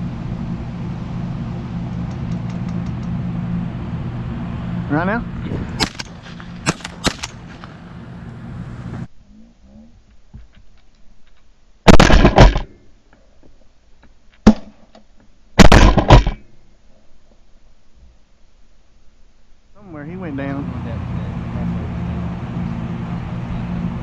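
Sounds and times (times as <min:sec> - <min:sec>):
steady motor noise: 0:00.0 - 0:09.1, 0:19.8 - 0:24.0
sharp clicks: 0:05.8 - 0:07.8, 0:15.6 - 0:16.4
shotgun shots: 0:05.8 - 0:07.8, 0:11.9 - 0:12.7, 0:15.6 - 0:16.4.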